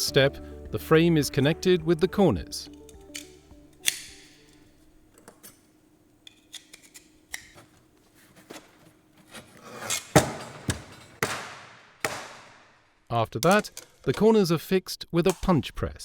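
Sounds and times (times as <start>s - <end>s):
metal frame pieces clicking: 2.7s - 4.6s, 13.4s - 14.3s.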